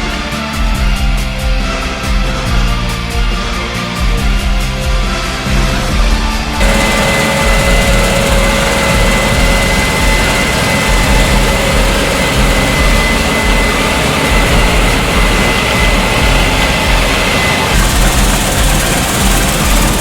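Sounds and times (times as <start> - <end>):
steady high whine: 6.5 - 20.0
combine harvester running: 6.6 - 20.0.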